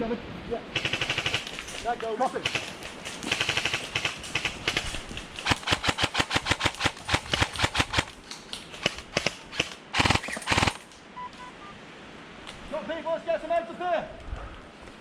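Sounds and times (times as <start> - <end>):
airsoft guns firing: 0.8 - 8.2, 8.8 - 10.9.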